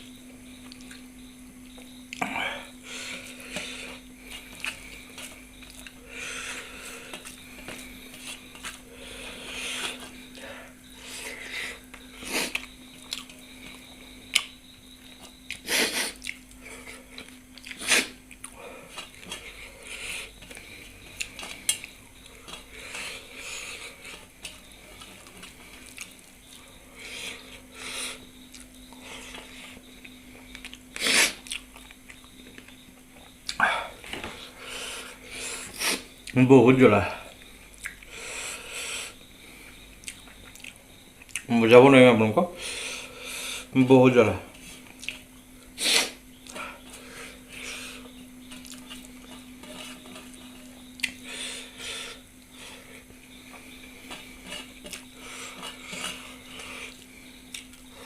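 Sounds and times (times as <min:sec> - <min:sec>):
steady low hum: 0:00.0 - 0:58.0
soft chewing: 0:00.6 - 0:02.3, 0:03.2 - 0:06.0, 0:11.7 - 0:33.6, 0:37.4 - 0:38.1, 0:39.6 - 0:41.5, 0:44.6 - 0:45.4, 0:46.3 - 0:51.3, 0:52.1 - 0:58.0.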